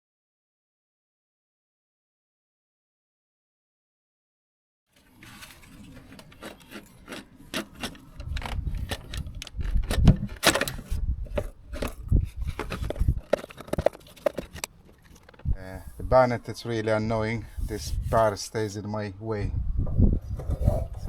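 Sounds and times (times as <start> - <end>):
parts and cables clicking and rubbing: 5.0 - 15.6.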